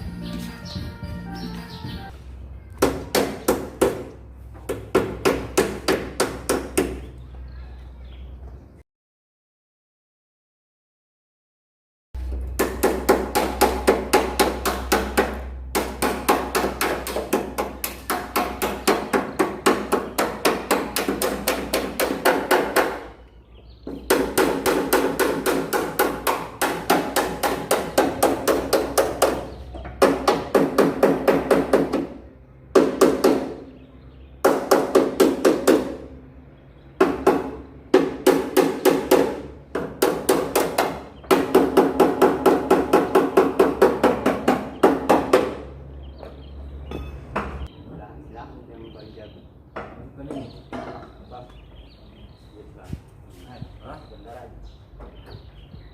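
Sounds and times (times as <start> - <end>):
hammer beating sheet metal: 12.5 - 23.2, 23.9 - 33.7, 37.0 - 45.7.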